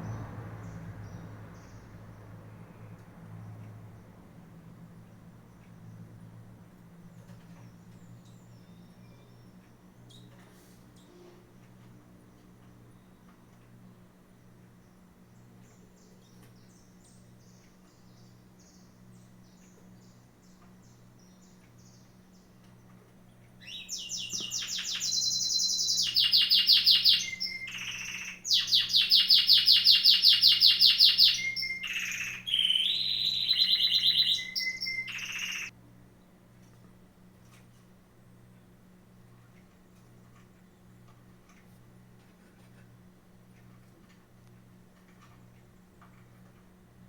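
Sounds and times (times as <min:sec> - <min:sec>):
songbird singing trills: 0:07.1 - 0:11.2, 0:14.7 - 0:35.7.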